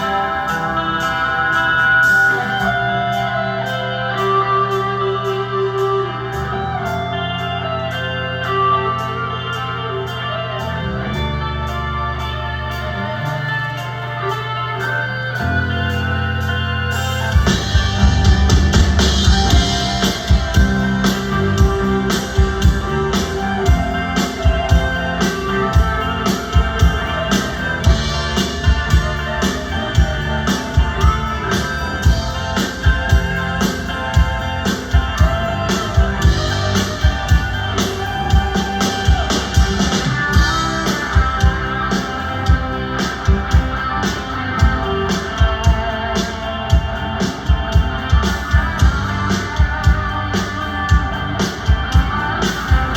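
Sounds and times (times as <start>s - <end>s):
electric guitar: 0.0s - 52.9s
steady drumbeat: 17.0s - 52.9s.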